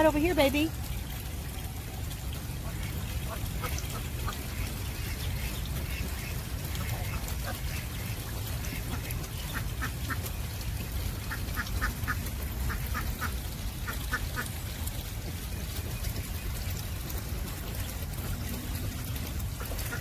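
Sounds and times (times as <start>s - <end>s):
ducklings peeping: 2.6s - 14.5s.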